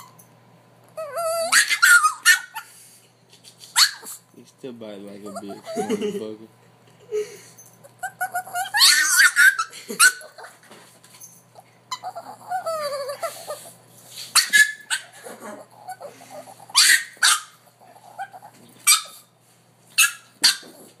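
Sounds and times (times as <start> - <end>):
dog whining: 0.9 - 2.7, 3.3 - 4.3, 5.2 - 6.0, 7.8 - 10.7, 11.6 - 19.3, 20.0 - 21.0
dog barking: 16.7 - 17.6.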